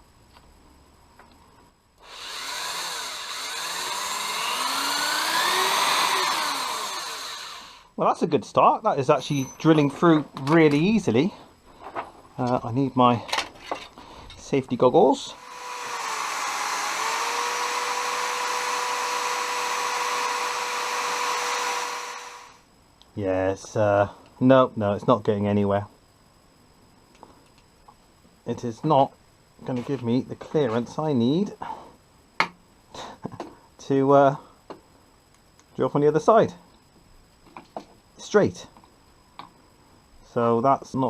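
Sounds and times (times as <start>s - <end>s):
power drill drilling into bolt: 2.0s - 7.9s, 15.4s - 22.6s.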